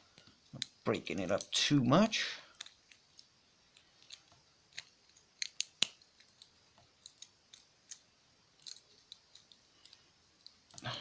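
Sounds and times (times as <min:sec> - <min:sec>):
small tools clicking on watch parts: 0:08.6 - 0:10.9.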